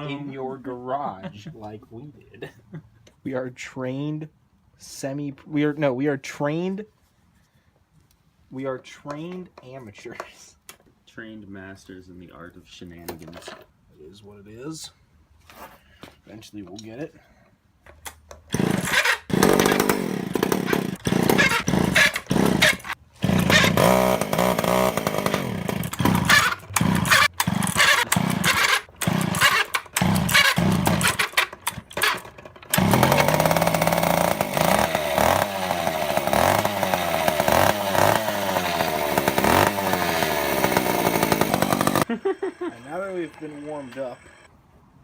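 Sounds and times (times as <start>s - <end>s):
two-stroke engine revving: 18.5s - 42.1s.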